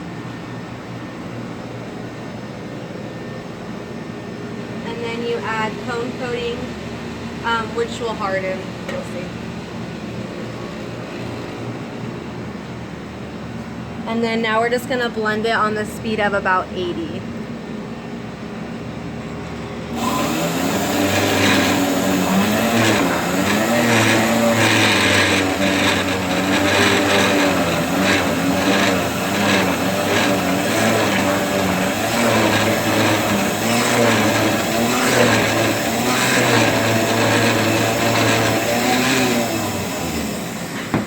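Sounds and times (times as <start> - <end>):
spindle mixer motor running: 19.9 - 41.0.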